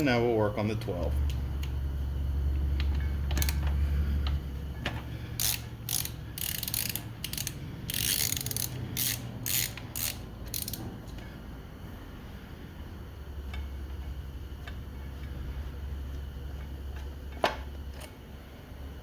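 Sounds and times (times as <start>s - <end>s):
socket ratchet clicking: 2.8s - 3.7s, 5.4s - 11.2s.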